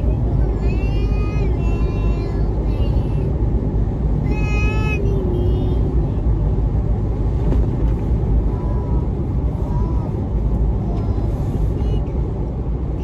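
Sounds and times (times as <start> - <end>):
vehicle rumble: 0.0 - 13.0.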